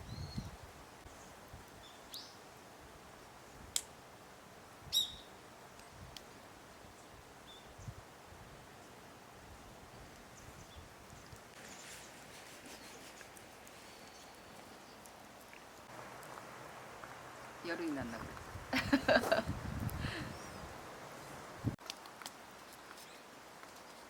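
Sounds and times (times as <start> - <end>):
bird chirps: 4.9 - 5.3.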